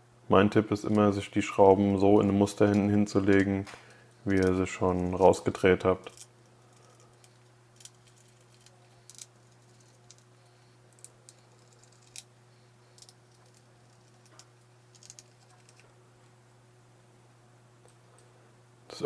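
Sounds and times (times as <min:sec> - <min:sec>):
steady low hum: 0:00.0 - 0:16.0
screwdriver and screws clicking: 0:00.7 - 0:15.8.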